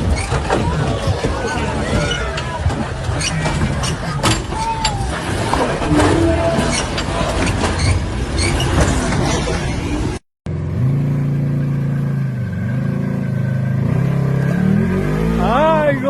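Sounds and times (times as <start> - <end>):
vehicle engine revving: 10.5 - 15.8.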